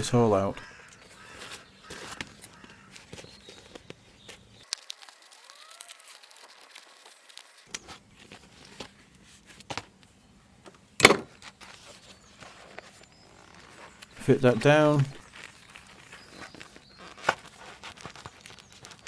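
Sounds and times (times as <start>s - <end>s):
foam crinkling rustle: 1.1s - 9.7s, 11.3s - 14.2s, 14.9s - 19.0s
foam crackles and clicks: 4.6s - 7.8s, 13.0s - 19.0s.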